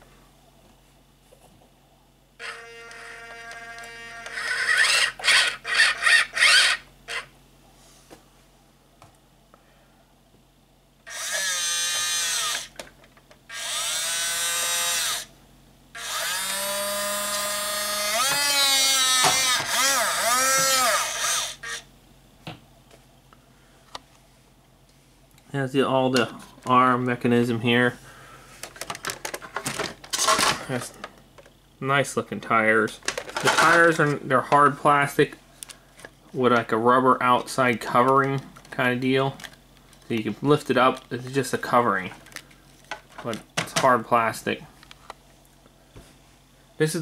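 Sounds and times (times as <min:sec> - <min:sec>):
toy electric motors whining: 0:02.4 - 0:07.3, 0:11.0 - 0:12.8, 0:13.5 - 0:15.3, 0:15.9 - 0:21.9, 0:30.1 - 0:30.6.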